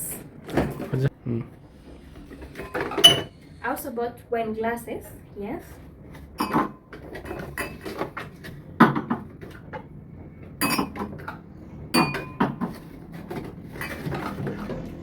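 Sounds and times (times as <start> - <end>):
wine glasses clinking: 3.0 - 3.3, 10.6 - 11.0.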